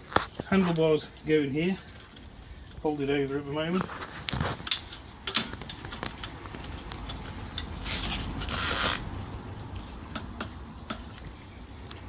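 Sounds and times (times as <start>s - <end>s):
rustling scrape: 3.6s - 6.1s, 7.6s - 9.1s.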